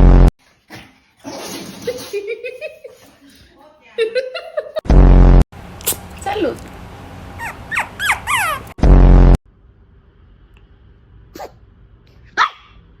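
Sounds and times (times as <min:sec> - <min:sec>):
loud low buzzing blast: 0:00.0 - 0:00.3, 0:04.9 - 0:05.8, 0:08.8 - 0:09.6
squeaky chirps: 0:07.4 - 0:08.8.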